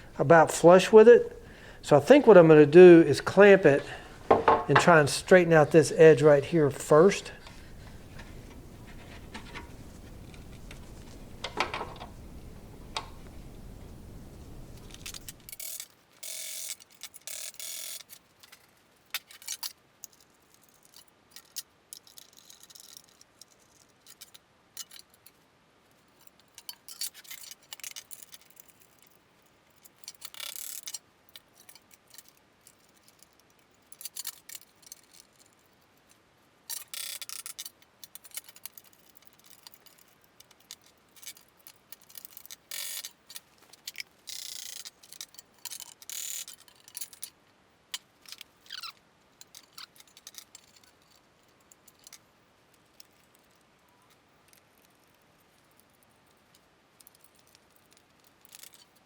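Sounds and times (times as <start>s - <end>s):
metallic rattles and scrapes: 3.3s - 15.7s.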